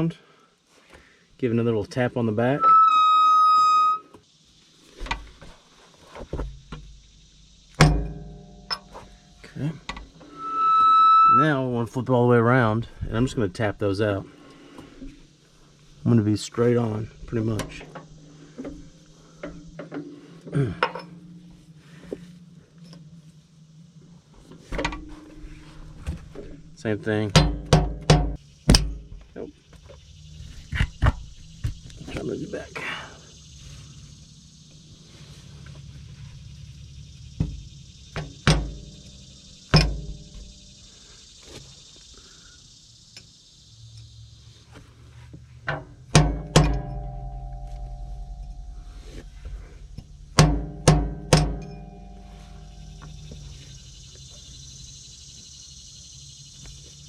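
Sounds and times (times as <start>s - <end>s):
metal ringing tone: 2.4s - 4.1s, 7.8s - 9.5s, 10.1s - 12.0s, 46.1s - 54.6s
steady low hum: 3.7s - 57.0s
hammer striking metal: 46.1s - 49.4s, 50.3s - 53.1s
hammer tapping metal pins: 50.4s - 52.2s.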